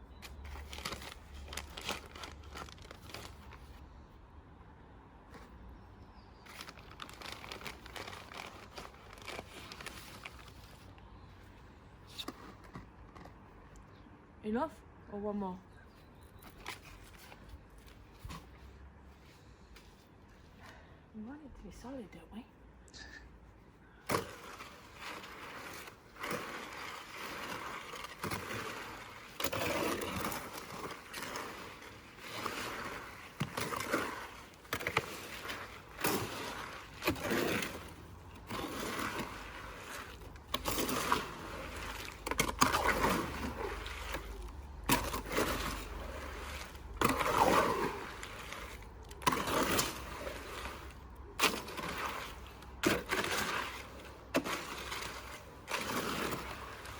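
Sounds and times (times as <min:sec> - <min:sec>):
trowel stirring wet cement: 0:24.1 - 0:56.9.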